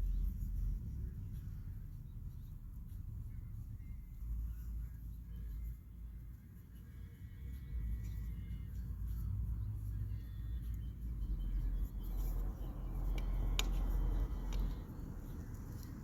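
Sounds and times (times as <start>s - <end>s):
cables handling rumble: 7.8s - 16.0s
light clicks: 12.4s - 16.0s.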